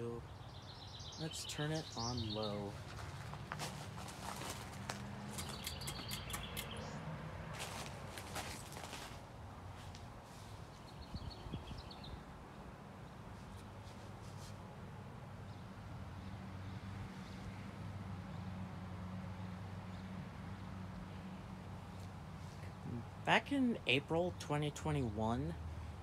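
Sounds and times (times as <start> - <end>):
high chirps: 5.4 - 7.0.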